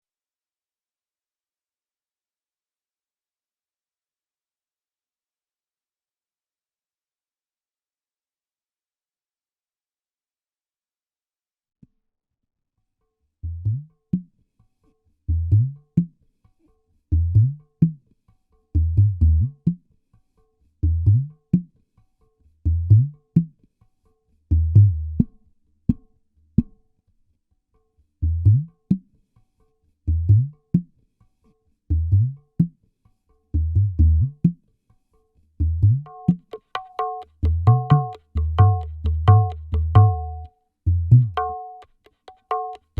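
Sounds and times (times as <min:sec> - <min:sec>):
ringing percussion tones: 0:36.1 - 0:40.5, 0:41.4 - 0:41.9.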